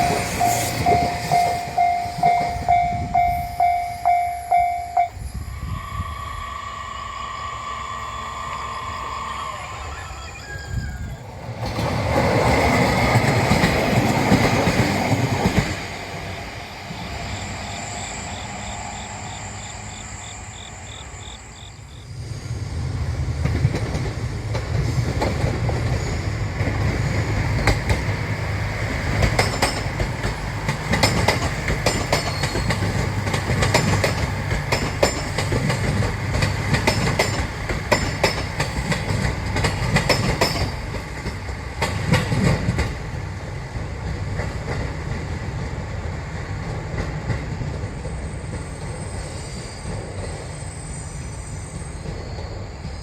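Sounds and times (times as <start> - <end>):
crossing warning bell dinging: 0.0 - 10.8, 27.5 - 41.3
train passing with wheel clatter: 0.0 - 53.0.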